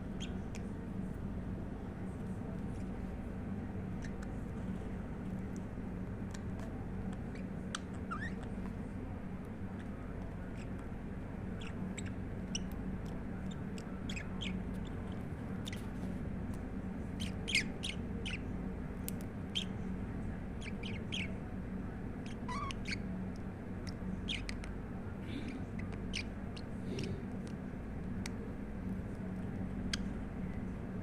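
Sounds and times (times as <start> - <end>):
steady low hum: 0.0 - 31.0
budgerigar chirping: 11.6 - 12.7, 17.2 - 18.4, 20.6 - 21.3, 22.3 - 23.0, 24.3 - 24.5.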